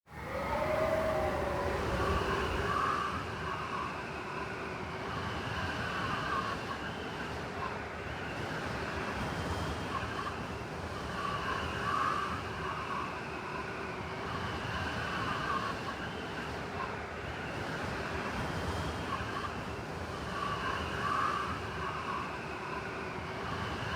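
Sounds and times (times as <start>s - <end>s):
blizzard wind whistling: 0.0s - 3.8s.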